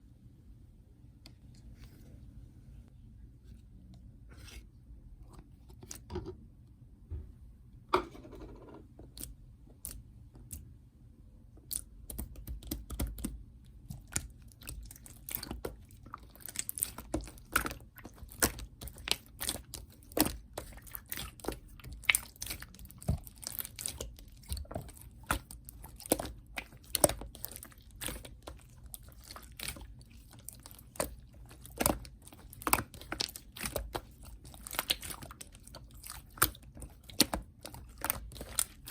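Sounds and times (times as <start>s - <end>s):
slime squished with sticky pops: 11.6s - 38.9s.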